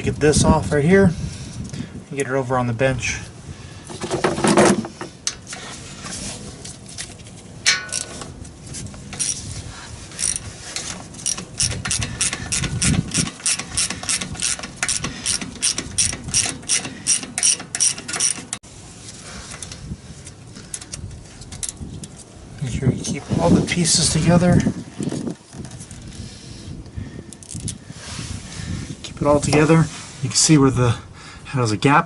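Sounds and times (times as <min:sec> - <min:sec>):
ratchet wrench clicking: 0:10.2 - 0:10.5, 0:11.2 - 0:18.6
scattered clicks and knocks: 0:10.2 - 0:18.6.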